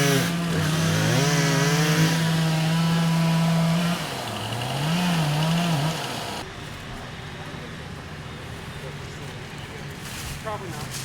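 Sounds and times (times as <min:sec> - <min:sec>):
chainsaw running: 0:00.0 - 0:06.4.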